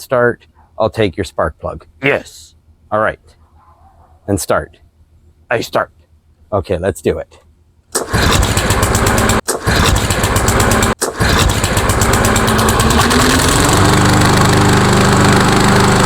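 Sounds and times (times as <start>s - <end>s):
lawnmower engine starting and running: 7.9s - 16.0s.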